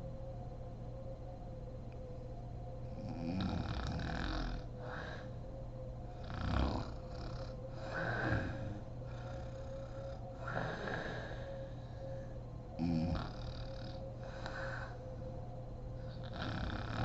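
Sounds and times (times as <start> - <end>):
woman snoring: 3.0 - 5.2, 6.2 - 11.4, 12.8 - 15.0, 16.2 - 17.0.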